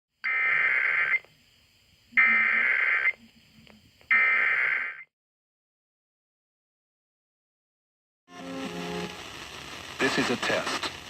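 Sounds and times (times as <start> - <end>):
warbling digital data tones: 2.1 - 3.5.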